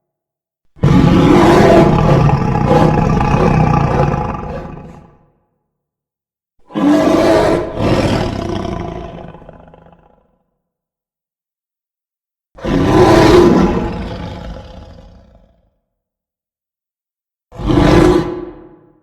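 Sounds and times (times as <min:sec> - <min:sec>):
deep creature roar with echo: 0:00.8 - 0:05.4, 0:06.7 - 0:10.5, 0:12.6 - 0:15.7, 0:17.6 - 0:19.0.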